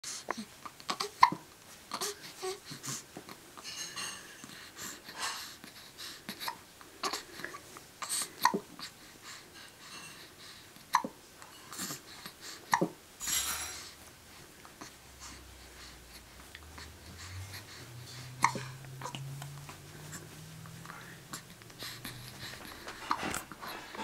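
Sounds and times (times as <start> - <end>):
breathy baby sounds: 0.0 - 3.8, 4.4 - 13.0, 13.8 - 24.0
baby hiccuping: 0.9 - 1.4, 8.0 - 8.6, 10.9 - 11.2, 18.4 - 19.2.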